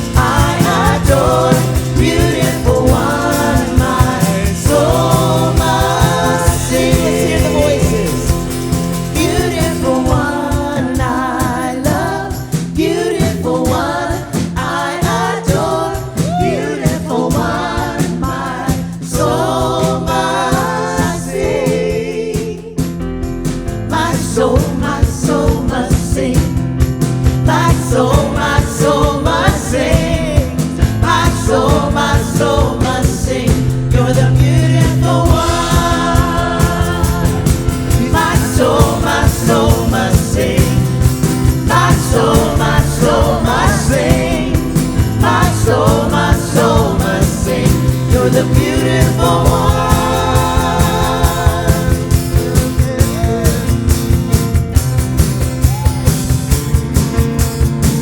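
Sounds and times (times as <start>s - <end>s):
steady drum beat: 0.0s - 58.0s
worship band and singers: 0.0s - 58.0s.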